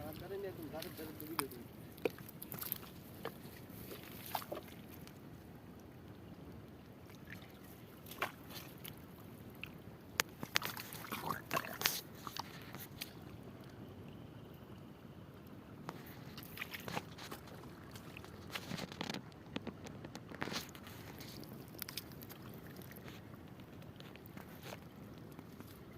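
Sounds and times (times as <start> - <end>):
small water splashes: 0.0 - 14.8, 15.4 - 25.9
low steady background noise: 0.0 - 25.9
clicks and scrapes: 18.4 - 22.2.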